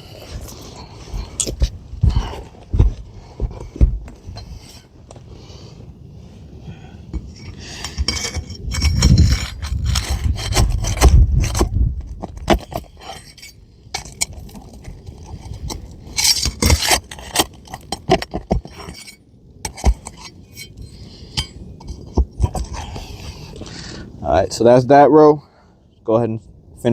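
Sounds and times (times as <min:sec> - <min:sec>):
tool scraping shingles: 0:00.0 - 0:04.9, 0:07.1 - 0:23.6.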